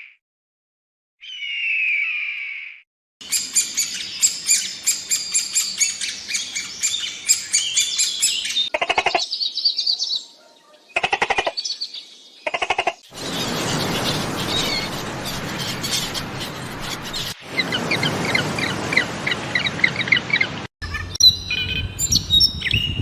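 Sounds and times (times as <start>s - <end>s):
small birds chirping: 1.2s - 23.0s
fast rattling bird trills: 3.2s - 9.2s, 12.5s - 19.7s.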